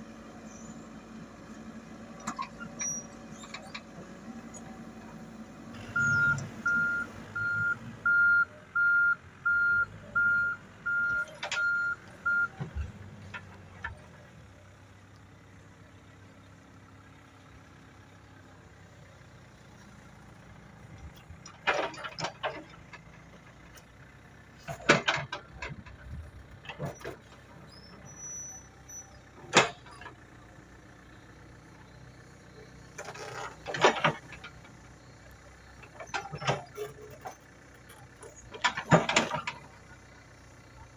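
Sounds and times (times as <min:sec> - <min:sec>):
diesel engine running quietly: 0:00.0 - 0:40.9
reversing alarm beeping: 0:05.8 - 0:12.6.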